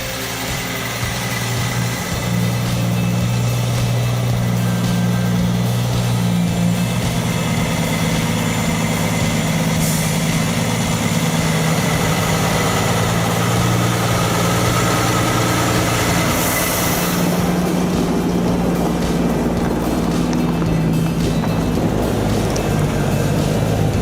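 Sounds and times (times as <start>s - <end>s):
truck diesel engine running: 0.0s - 24.0s.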